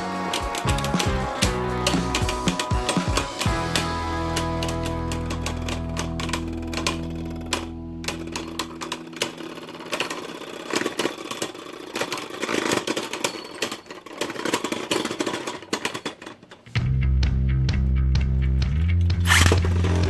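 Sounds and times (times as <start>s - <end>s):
background music: 0.0s - 10.1s, 16.8s - 20.0s.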